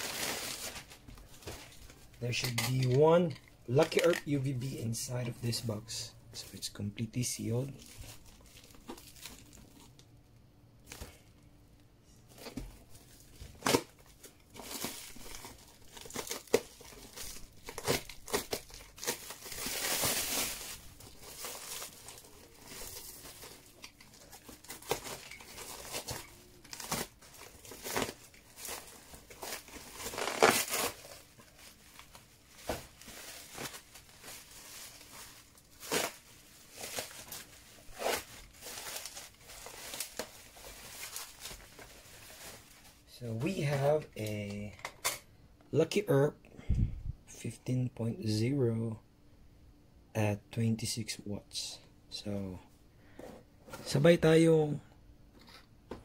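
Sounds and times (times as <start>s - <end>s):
packaging crinkling and tearing: 0.0s - 4.6s, 7.7s - 10.1s, 12.3s - 43.1s.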